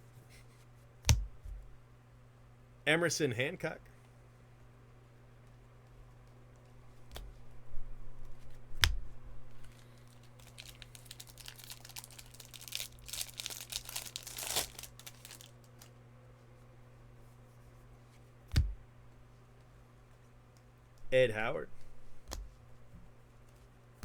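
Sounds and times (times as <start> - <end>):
plastic wrapping crinkling: 9.7 - 15.9.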